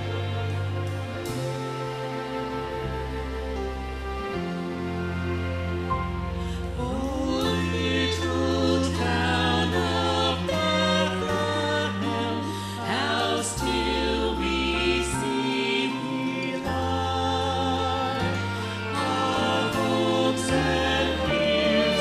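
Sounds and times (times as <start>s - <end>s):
held bass notes: 0.0s - 22.0s
instrumental accompaniment: 0.0s - 22.0s
vocal group singing in harmony: 6.6s - 22.0s.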